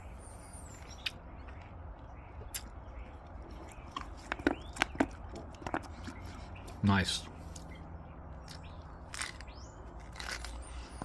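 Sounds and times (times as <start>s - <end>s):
chewing with sharp crunches: 0.7s - 11.0s
mouth clicks: 2.4s - 2.8s.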